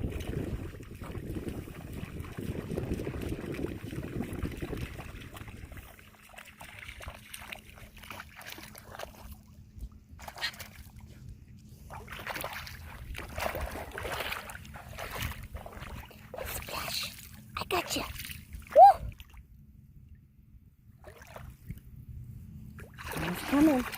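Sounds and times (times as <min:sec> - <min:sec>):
wind rumbling on microphone: 0:00.0 - 0:07.2, 0:12.8 - 0:16.2
seawater sloshing and splashing: 0:00.0 - 0:19.5, 0:21.0 - 0:22.0, 0:22.6 - 0:23.9
faint steady hum: 0:00.0 - 0:23.9.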